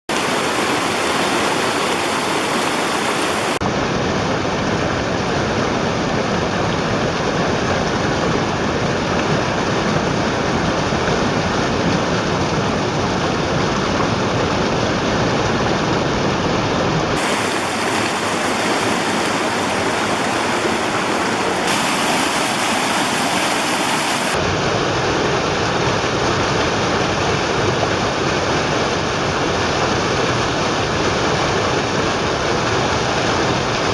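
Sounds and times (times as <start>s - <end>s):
stream rushing over rocks: 0.1s - 3.6s, 17.2s - 24.4s.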